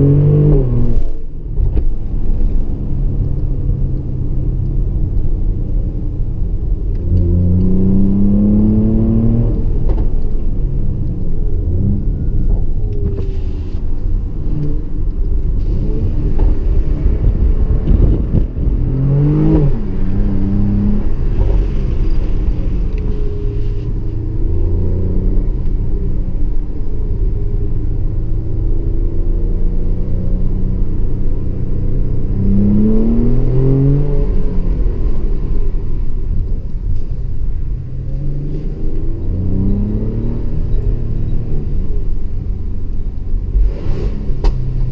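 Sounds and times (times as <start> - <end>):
car engine revving: 6.9 - 13.3, 14.1 - 26.4, 27.8 - 36.1.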